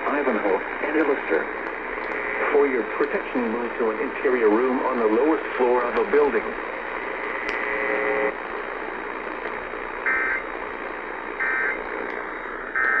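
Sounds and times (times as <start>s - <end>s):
radio static: 0.0s - 13.0s.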